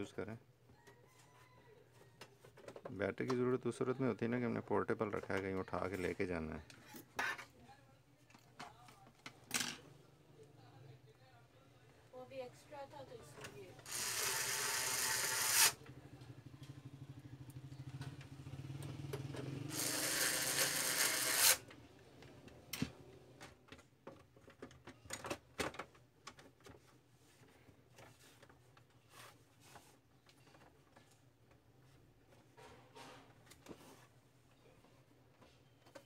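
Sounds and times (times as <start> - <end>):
printer motor hum: 13.8 - 15.8, 19.7 - 21.6
printer whirring: 13.8 - 15.8.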